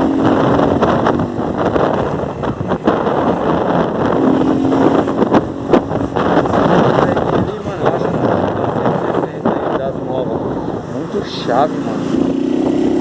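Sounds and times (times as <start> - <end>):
loud motorcycle exhaust: 0.0 - 13.0
wind buffeting microphone: 0.0 - 13.0.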